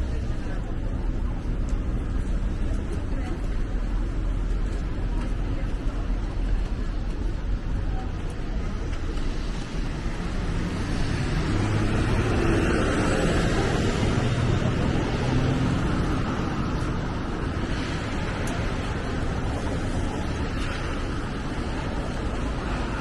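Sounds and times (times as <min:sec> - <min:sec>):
rainy street noise: 0:00.0 - 0:23.0
vehicle passing on wet road: 0:08.8 - 0:23.0.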